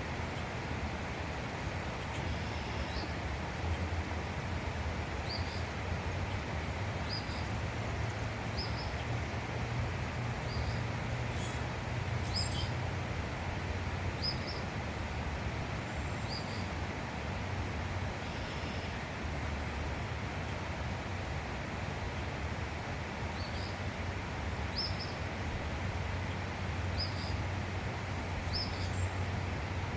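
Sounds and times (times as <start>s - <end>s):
steady rushing outdoor noise: 0.0s - 29.9s.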